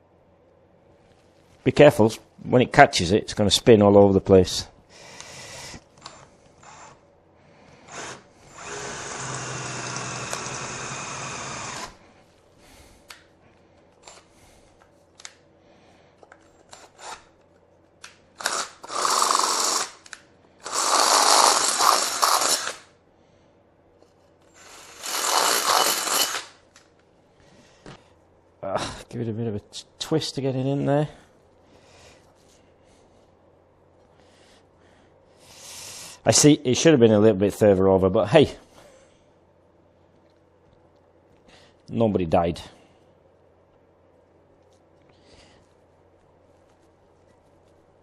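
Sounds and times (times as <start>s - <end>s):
power drill drilling: 7.9s - 12.0s, 18.4s - 20.0s, 20.6s - 22.8s, 24.6s - 26.4s.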